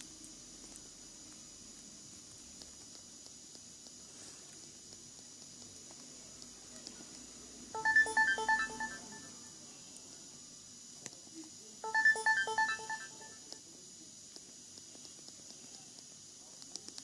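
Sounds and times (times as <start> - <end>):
electronic ringtone notes: 7.8 - 9.4, 11.8 - 13.5.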